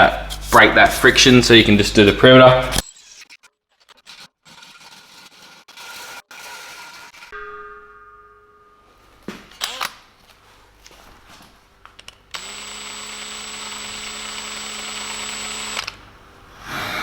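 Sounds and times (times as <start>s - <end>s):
electric power tool spinning: 12.3s - 16.0s.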